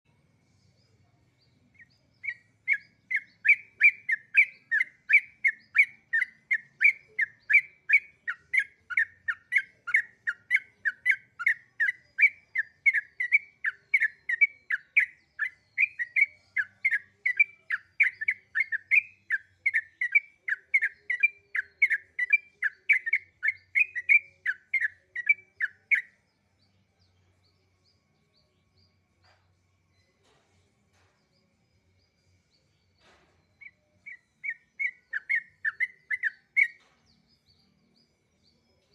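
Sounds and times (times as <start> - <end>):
songbird calling: 1.0 - 38.9.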